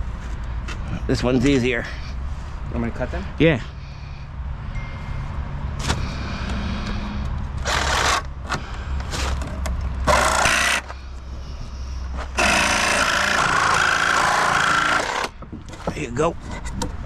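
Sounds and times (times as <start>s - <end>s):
power saw cutting through nails: 7.6s - 9.4s, 10.0s - 11.0s, 12.3s - 15.4s.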